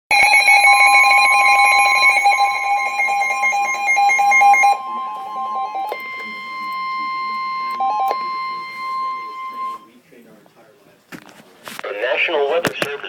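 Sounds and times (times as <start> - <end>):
pulsing electronic alarm tones: 0.1 - 9.9.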